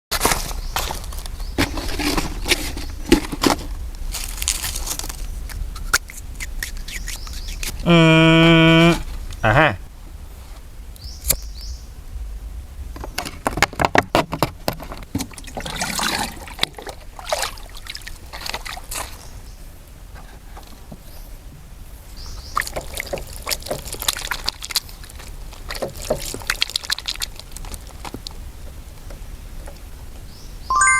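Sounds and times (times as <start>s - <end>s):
water pouring and trickling: 15.3s - 19.2s, 22.6s - 28.0s.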